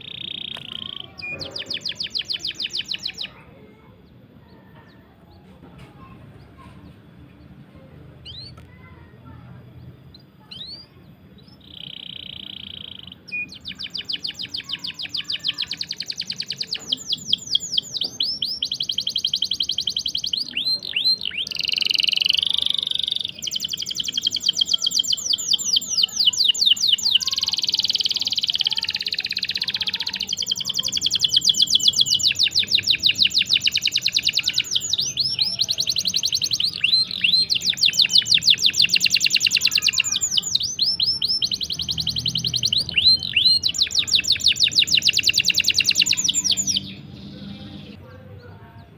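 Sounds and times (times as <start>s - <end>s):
canary singing trills: 0.0s - 5.4s, 6.0s - 48.9s.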